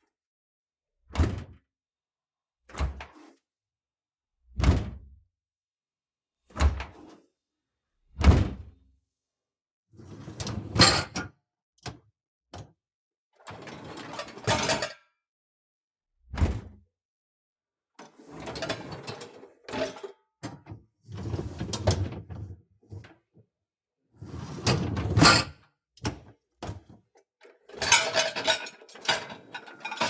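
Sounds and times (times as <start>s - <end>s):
dishwasher rack rattling and scraping: 27.8s - 30.0s.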